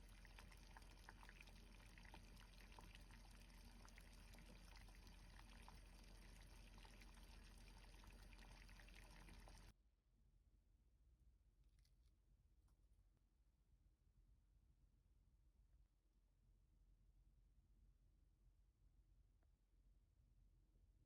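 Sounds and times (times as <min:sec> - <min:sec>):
flowing water with small ticks: 0:00.0 - 0:09.7.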